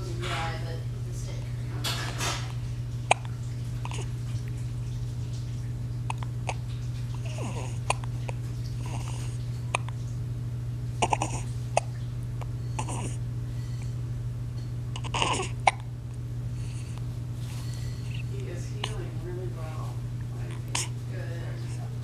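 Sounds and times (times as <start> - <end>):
low hum: 0.0 - 22.0
baby hiccuping: 3.1 - 3.3, 11.0 - 12.0, 12.8 - 13.2, 15.0 - 15.9.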